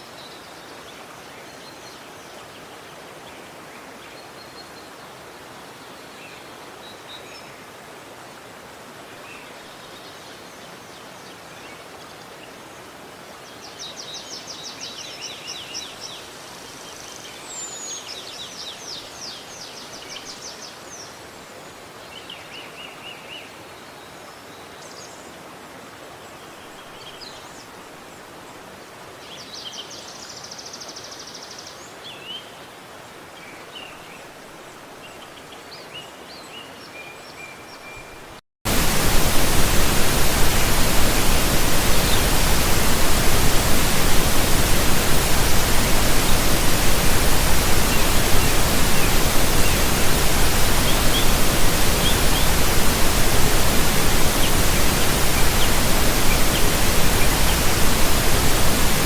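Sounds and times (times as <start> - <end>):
faint hiss: 38.7 - 59.0
rush of falling water: 38.7 - 59.0.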